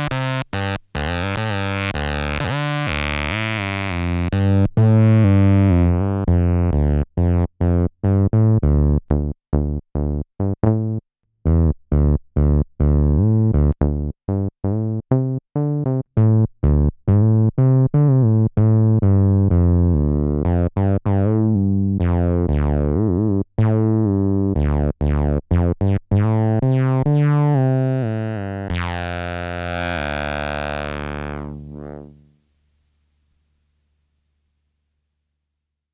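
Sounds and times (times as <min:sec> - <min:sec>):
distorted acid synth bassline: 0:00.0 - 0:05.0, 0:28.0 - 0:32.2.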